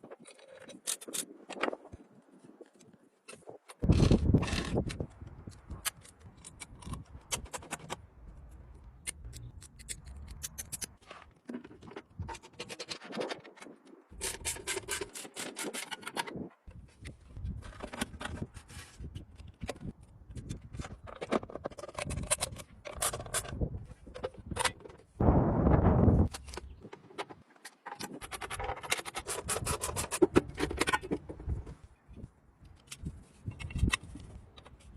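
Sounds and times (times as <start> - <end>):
scraping and rubbing on bicycle parts: 9.2 - 25.1, 26.3 - 31.9.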